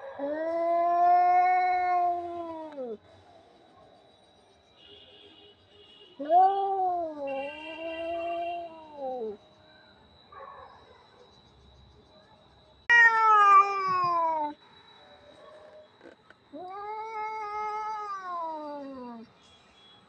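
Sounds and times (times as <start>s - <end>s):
cat meowing: 0.2s - 3.0s, 6.2s - 9.4s, 12.9s - 14.6s, 16.5s - 19.3s.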